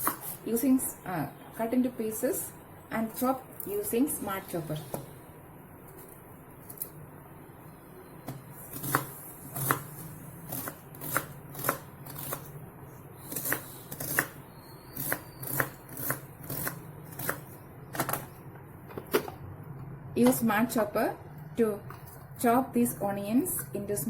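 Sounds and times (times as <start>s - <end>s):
onion chopper chopping strokes: 0.0s - 0.4s, 8.6s - 12.6s, 13.2s - 18.2s.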